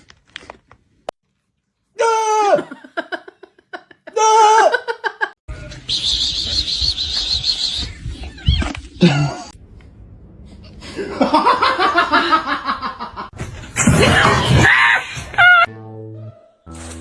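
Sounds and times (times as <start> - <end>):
people laughing: 10.8 - 13.3.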